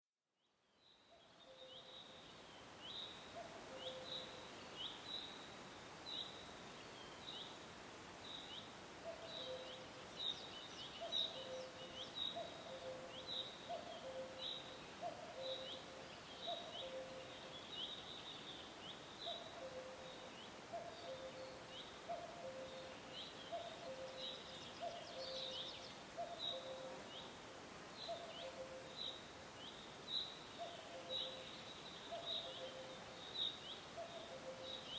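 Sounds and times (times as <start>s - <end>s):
forest background noise: 0.2s - 34.9s
cuckoos calling: 3.4s - 4.4s, 9.0s - 9.9s, 10.9s - 17.6s, 19.2s - 27.3s, 28.0s - 29.2s, 30.6s - 34.9s.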